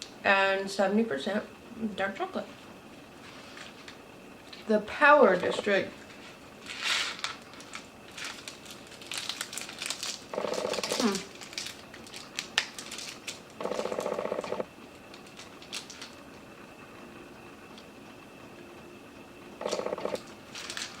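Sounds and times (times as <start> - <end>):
wrapper crinkling: 5.4 - 14.2, 15.0 - 16.4, 19.8 - 21.0.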